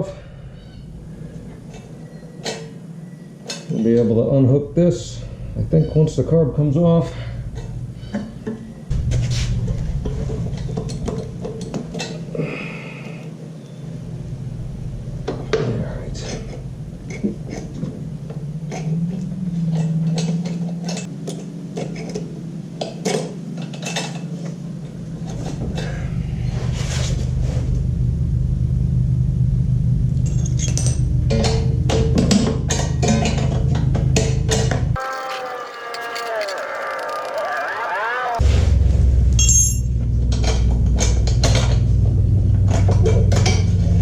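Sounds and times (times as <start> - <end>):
steady low hum: 0.0 - 35.0, 38.4 - 44.0
metal tools clinking: 35.0 - 38.4.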